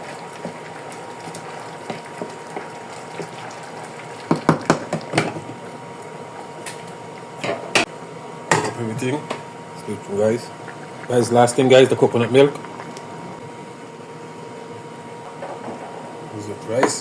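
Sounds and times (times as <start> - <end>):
pot of rice bubbling: 0.0 - 7.8, 8.9 - 14.5.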